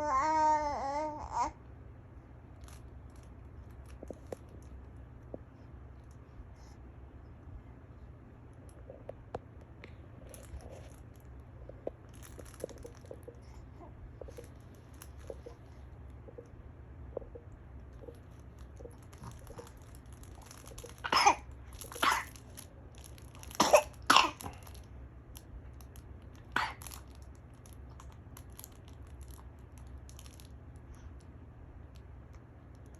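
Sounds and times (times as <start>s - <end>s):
girl coughing: 21.1s - 21.4s.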